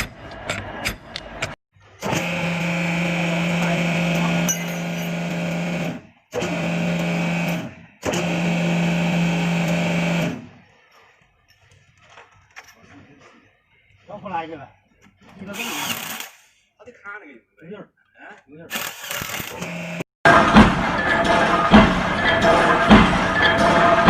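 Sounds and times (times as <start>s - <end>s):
motor-driven machine humming: 2.0s - 10.6s, 18.7s - 24.0s.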